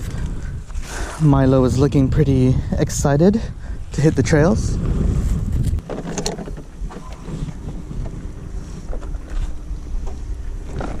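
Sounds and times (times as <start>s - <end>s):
wind buffeting microphone: 0.0s - 11.0s
faint clicks and rustles: 5.2s - 11.0s.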